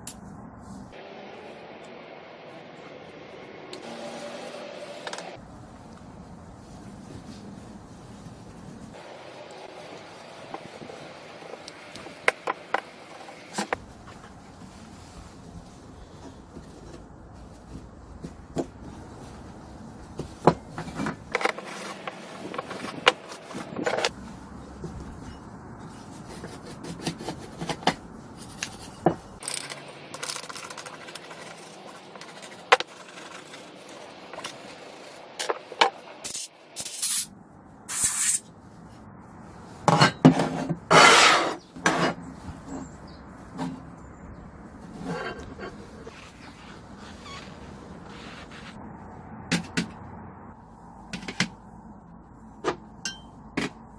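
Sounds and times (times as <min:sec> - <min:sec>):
scraping on drill parts: 0:39.9 - 0:43.0.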